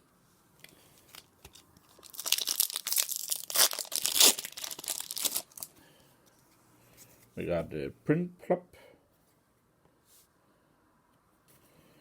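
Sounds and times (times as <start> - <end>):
foil wrapper tearing and crinkling: 1.0 - 5.7.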